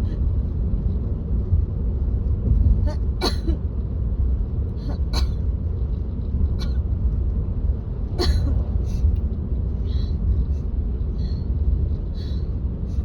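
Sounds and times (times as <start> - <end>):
car cabin rumble: 0.0 - 13.0
woman coughing: 2.9 - 3.6, 4.9 - 5.4, 8.2 - 8.7.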